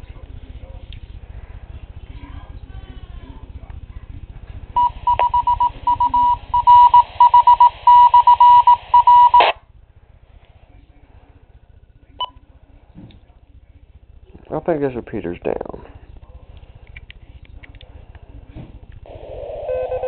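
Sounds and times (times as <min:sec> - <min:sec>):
radio beep tone in morse rhythm: 0:04.8 - 0:09.6.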